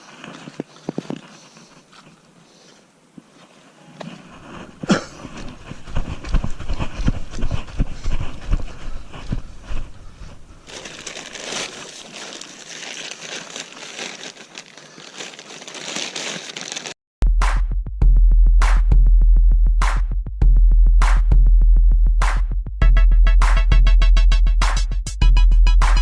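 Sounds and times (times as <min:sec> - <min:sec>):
close rustling and crinkling: 0:00.0 - 0:17.0.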